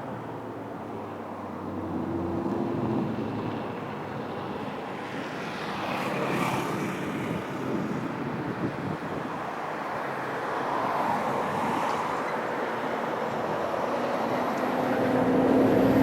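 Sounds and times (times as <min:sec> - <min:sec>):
train rushing past: 0:13.8 - 0:16.0.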